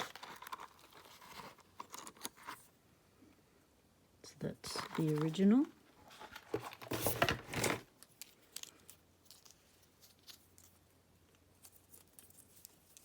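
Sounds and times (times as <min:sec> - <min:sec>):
tools rustling scrape: 0:04.7 - 0:07.9.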